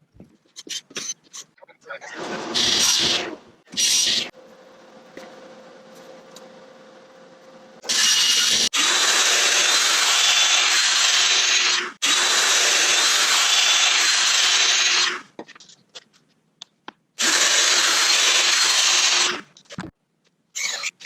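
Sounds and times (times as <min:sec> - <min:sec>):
power tool cutting plywood: 0:07.8 - 0:15.2, 0:17.2 - 0:19.4.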